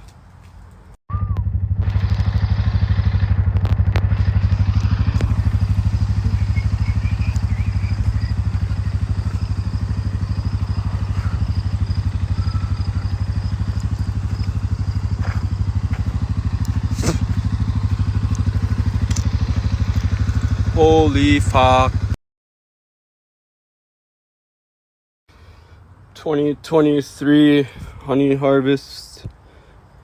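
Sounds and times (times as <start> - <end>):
motor running with low hum: 1.2 - 22.2.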